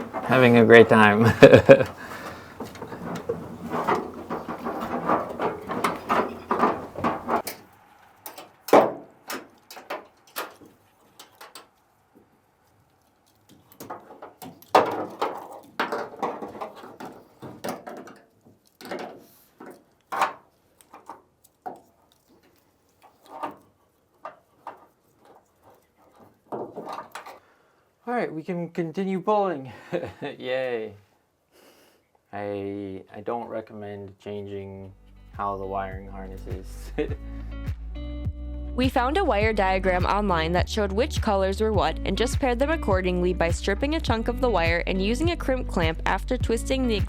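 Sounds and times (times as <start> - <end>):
clicks and clatter of parts: 0.0 - 11.8, 13.2 - 27.4.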